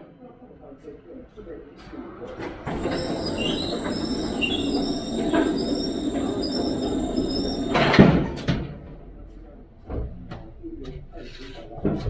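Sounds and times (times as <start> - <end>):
short high squeaks: 2.7 - 8.1.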